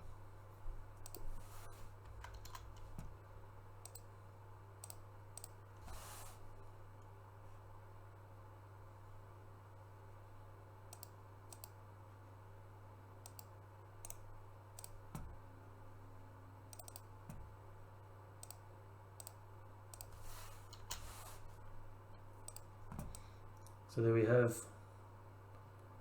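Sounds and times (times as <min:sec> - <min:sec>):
low steady hum: 0:00.0 - 0:26.0
computer mouse clicks: 0:01.0 - 0:03.2, 0:03.8 - 0:04.1, 0:04.8 - 0:05.6, 0:10.9 - 0:11.8, 0:13.2 - 0:14.2, 0:14.8 - 0:15.4, 0:16.7 - 0:17.4, 0:18.4 - 0:18.6, 0:19.2 - 0:21.4, 0:22.4 - 0:23.8.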